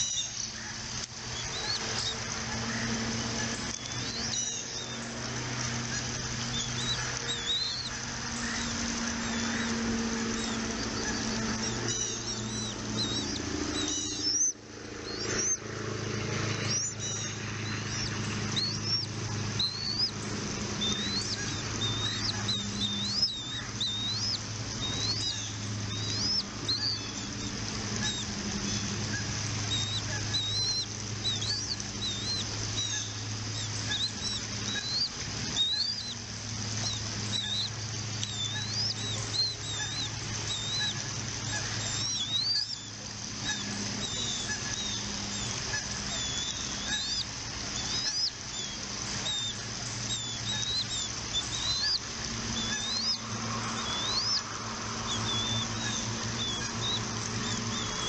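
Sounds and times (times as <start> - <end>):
eagles chirping: 0.0 - 58.0
steady low hum: 0.0 - 58.0.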